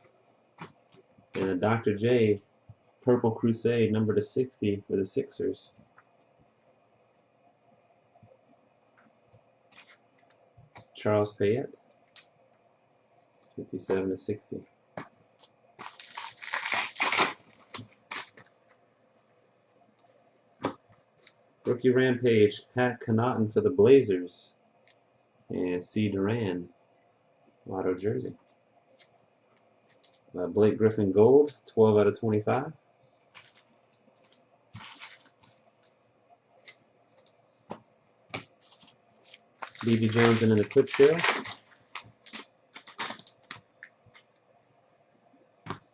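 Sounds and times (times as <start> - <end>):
foil wrapper crinkling and tearing: 15.8 - 18.5, 33.3 - 35.6, 38.6 - 43.9
trading cards rustling: 15.8 - 18.6, 33.3 - 35.9, 38.4 - 44.3.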